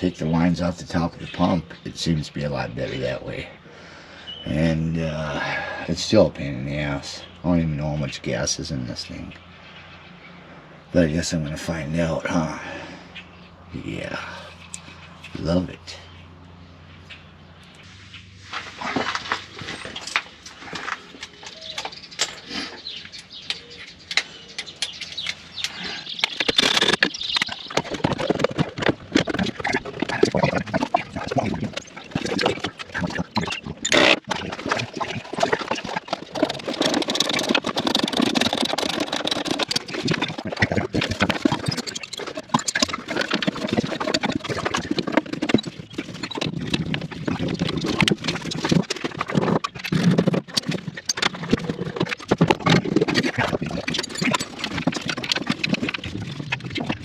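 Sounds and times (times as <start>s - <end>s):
hand tools clanking on metal: 18.8s - 57.0s.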